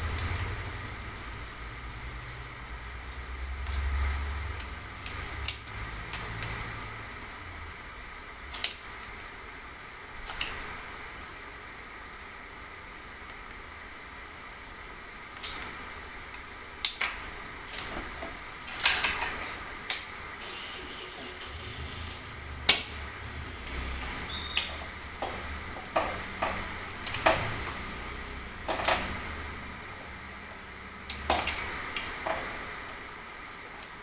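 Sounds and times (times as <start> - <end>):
metallic clinks of tools and parts: 31.3 - 31.8.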